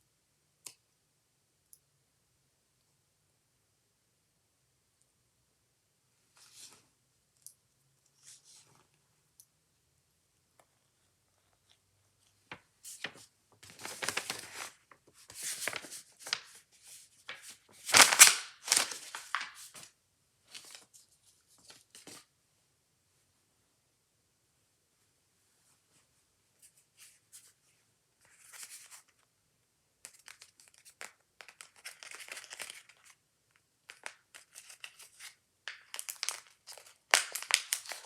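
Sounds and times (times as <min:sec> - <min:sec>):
packaging crinkling and tearing: 0:13.6 - 0:16.6, 0:17.3 - 0:19.9, 0:30.1 - 0:33.2, 0:33.9 - 0:38.0.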